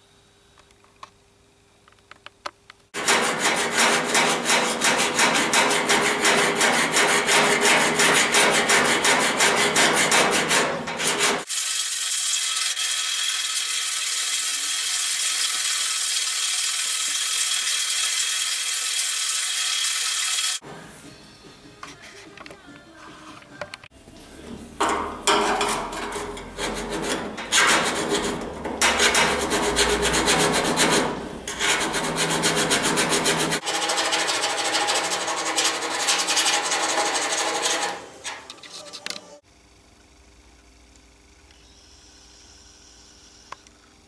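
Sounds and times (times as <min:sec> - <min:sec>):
hand file scraping steel: 0:03.0 - 0:11.5, 0:24.8 - 0:39.3
angle grinder on steel: 0:03.0 - 0:20.6, 0:24.8 - 0:39.0.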